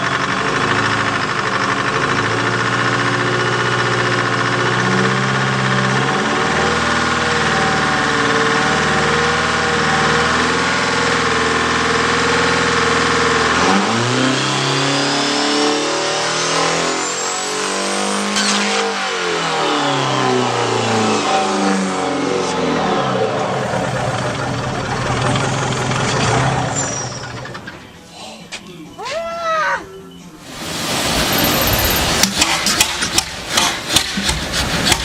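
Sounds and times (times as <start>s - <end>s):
engine revving: 0.0s - 27.8s, 30.4s - 35.0s
high rising whine: 2.3s - 28.1s, 30.3s - 35.0s
sharp crack: 31.0s - 35.0s.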